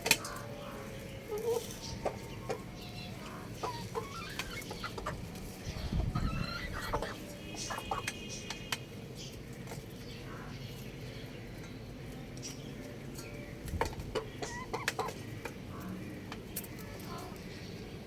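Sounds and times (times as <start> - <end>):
chickens clucking: 0.0 - 18.0
low background noise: 0.0 - 18.0.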